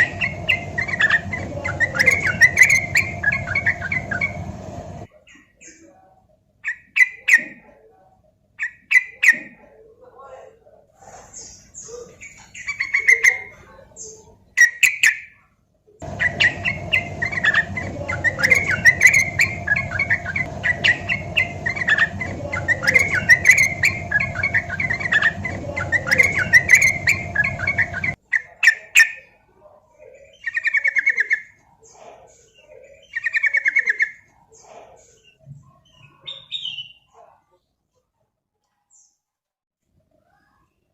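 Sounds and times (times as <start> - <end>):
steady background hum: 0.0 - 5.2, 16.0 - 28.2
bird chattering song: 0.0 - 5.9, 11.3 - 15.3, 16.0 - 29.3, 30.1 - 37.1.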